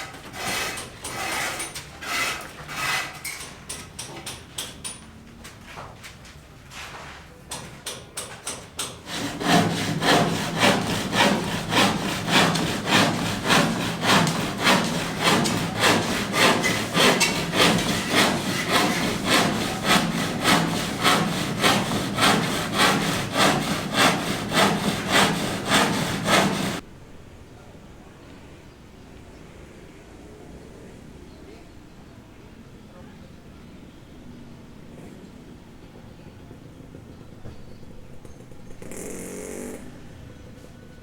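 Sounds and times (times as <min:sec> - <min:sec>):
hand saw cutting wood: 0:00.0 - 0:03.5, 0:08.8 - 0:26.8.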